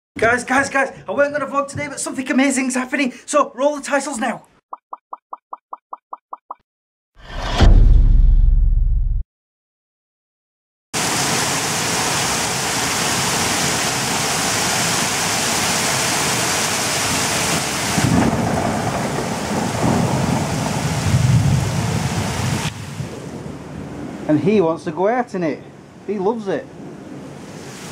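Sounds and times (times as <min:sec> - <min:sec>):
heavy rain pouring: 0:11.0 - 0:24.4, 0:26.0 - 0:27.9
low thunder rumbling: 0:18.0 - 0:24.7.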